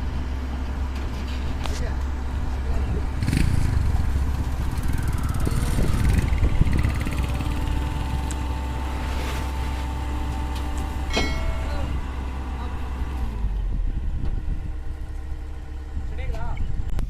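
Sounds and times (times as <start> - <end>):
heavy diesel engine running: 0.0 - 17.0
knocks and clanks: 10.5 - 12.0.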